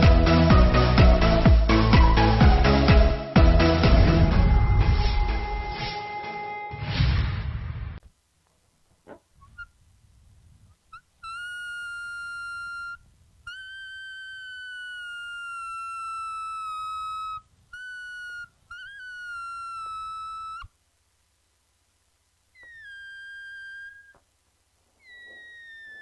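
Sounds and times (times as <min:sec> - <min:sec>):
balloon deflating with squeal: 0:10.9 - 0:20.8, 0:22.5 - 0:24.3, 0:25.0 - 0:26.0.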